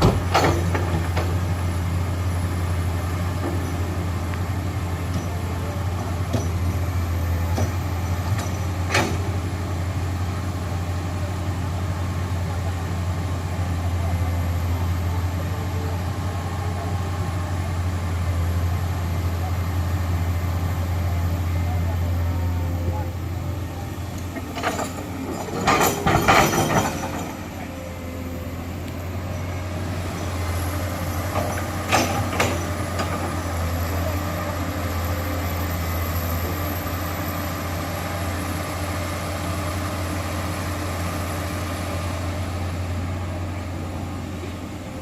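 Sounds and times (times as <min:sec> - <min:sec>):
metal clanks and knocks: 0:00.0 - 0:01.4, 0:24.2 - 0:27.9, 0:31.1 - 0:33.4
heavy machinery diesel engine: 0:00.0 - 0:45.0.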